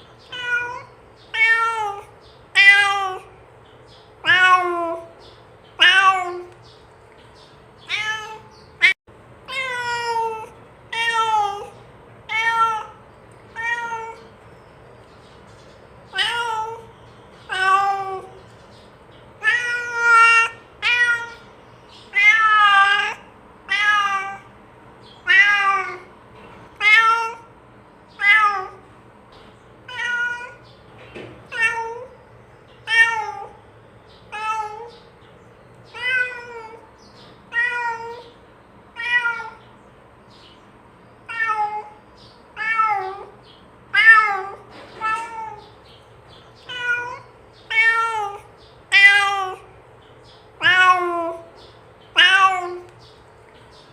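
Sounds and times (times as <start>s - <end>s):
cat meowing: 0.2s - 3.4s, 4.2s - 5.1s, 5.8s - 6.6s, 7.8s - 14.3s, 16.1s - 18.4s, 19.4s - 21.5s, 22.1s - 24.5s, 25.2s - 26.1s, 26.8s - 27.5s, 28.2s - 28.9s, 29.8s - 30.6s, 31.4s - 32.2s, 32.8s - 33.6s, 34.3s - 35.1s, 35.9s - 36.9s, 37.5s - 39.6s, 41.2s - 45.8s, 46.6s - 49.7s, 50.6s - 53.0s.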